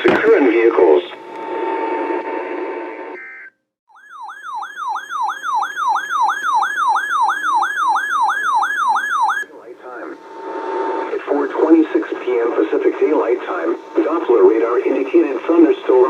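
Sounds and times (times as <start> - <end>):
emergency alert tone sweeping: 3.2 - 9.6
broadcast hiss with faint tone: 11.0 - 16.0.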